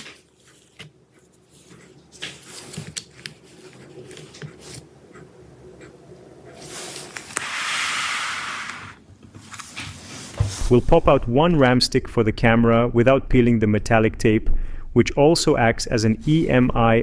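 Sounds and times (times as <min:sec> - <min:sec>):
loud even hiss: 0:07.4 - 0:09.0.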